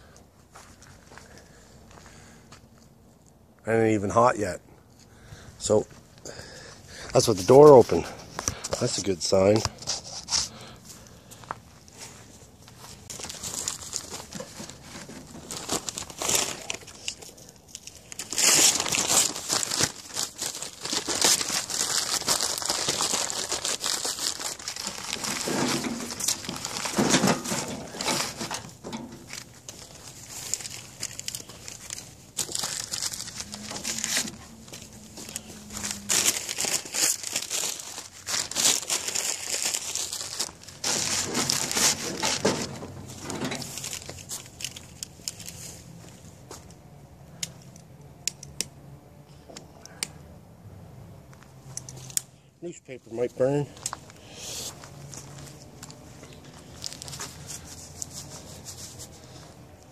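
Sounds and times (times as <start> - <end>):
tinder crinkling and tearing: 7.2 - 46.2, 53.1 - 59.9.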